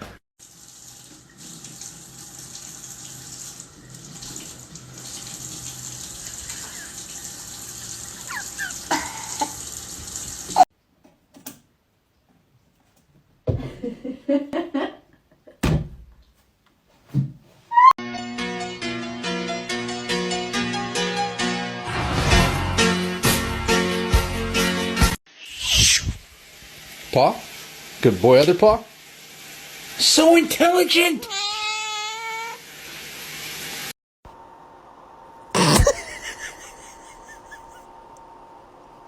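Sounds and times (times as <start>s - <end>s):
tap water running: 0.4s - 10.7s, 26.4s - 33.9s
high squeaks: 17.7s - 18.0s.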